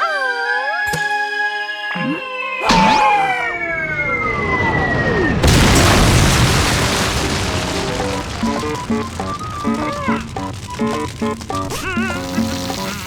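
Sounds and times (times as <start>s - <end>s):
descending whistle: 2.6s - 5.5s
loud boom: 2.6s - 13.0s.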